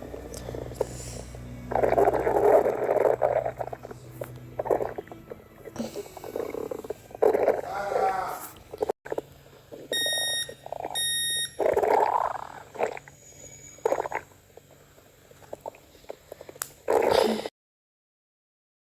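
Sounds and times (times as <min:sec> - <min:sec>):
stomach growling: 0:00.0 - 0:10.0, 0:10.6 - 0:17.5
short electronic beeps: 0:09.9 - 0:11.6.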